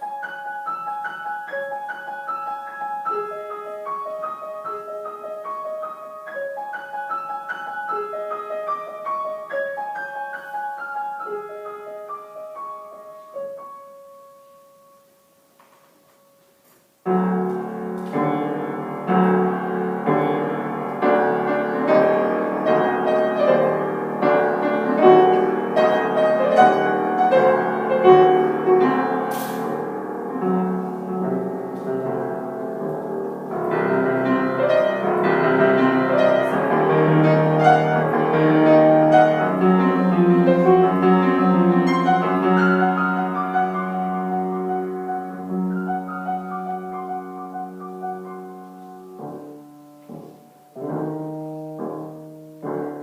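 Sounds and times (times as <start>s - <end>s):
solo piano classical piece: 0.0s - 53.0s
sharp click: 29.3s - 29.7s.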